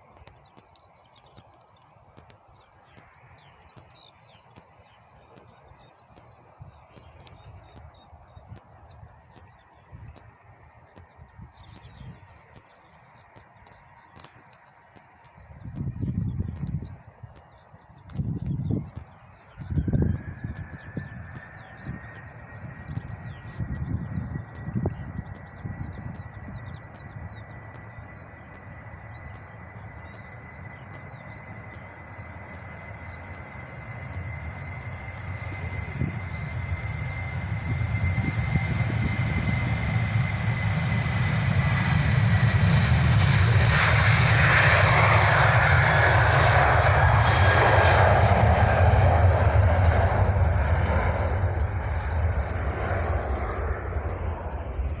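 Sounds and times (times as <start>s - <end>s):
jet engines rumbling: 0.0s - 55.0s
steady high whine: 15.3s - 55.0s.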